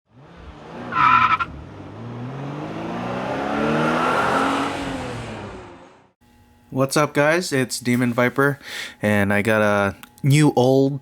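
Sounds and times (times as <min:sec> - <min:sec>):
car engine revving: 0:00.1 - 0:06.2
tire squeal: 0:00.4 - 0:01.7.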